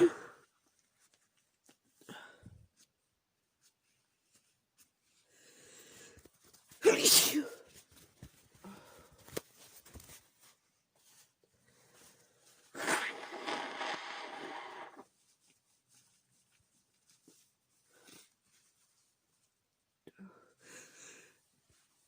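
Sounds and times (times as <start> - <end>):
woman sneezing: 6.8 - 7.6.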